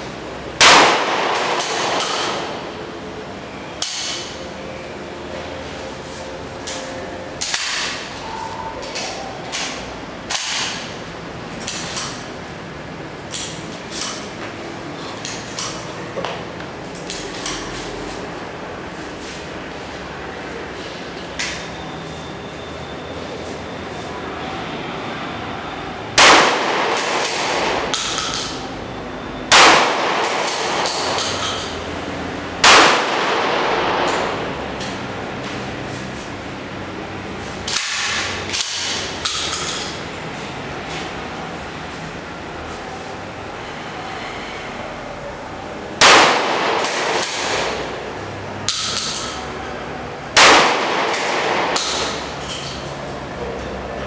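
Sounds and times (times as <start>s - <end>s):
fainter sharp gunshots: 0.6s - 2.4s, 26.2s - 27.8s, 29.5s - 31.2s, 32.6s - 34.1s, 46.0s - 47.7s, 50.4s - 51.8s
shotgun shots: 0.6s - 2.6s, 26.2s - 27.8s, 29.5s - 31.2s, 32.6s - 34.3s, 46.0s - 47.8s, 50.4s - 52.2s.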